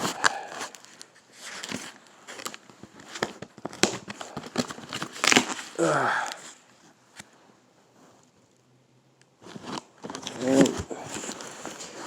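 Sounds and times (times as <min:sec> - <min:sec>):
packaging crinkling and clicking: 0:00.0 - 0:06.6, 0:09.4 - 0:12.0.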